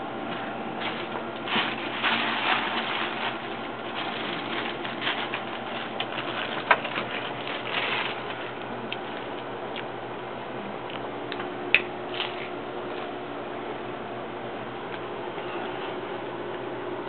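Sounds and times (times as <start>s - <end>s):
tacos crunching while chewed: 0.3s - 9.9s.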